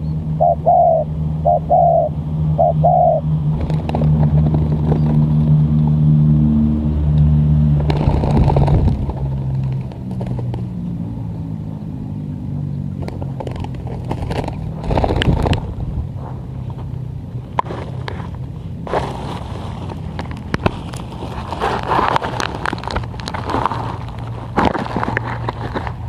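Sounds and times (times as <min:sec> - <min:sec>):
dove cooing: 0:00.0 - 0:03.3
vehicle engine running: 0:00.0 - 0:26.0.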